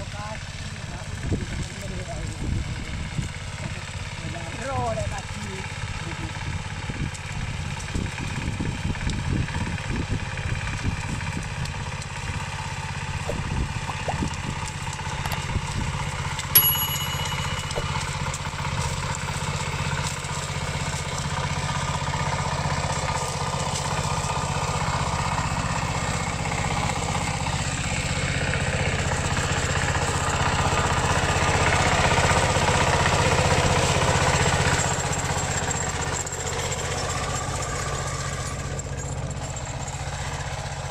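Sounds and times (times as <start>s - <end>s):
tractor diesel engine running: 0.0s - 40.9s.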